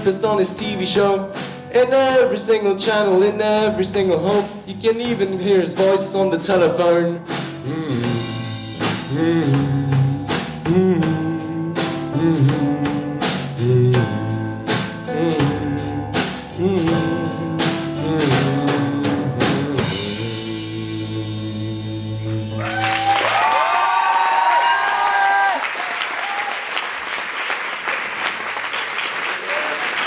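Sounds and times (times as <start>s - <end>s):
live rock band playing: 0.0s - 23.4s
drum kit beating: 0.0s - 25.6s.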